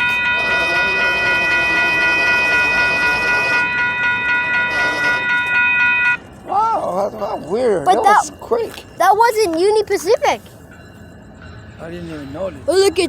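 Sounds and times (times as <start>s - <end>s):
locomotive air horn chord: 0.0s - 6.2s
locomotive rolling noise: 0.0s - 13.0s.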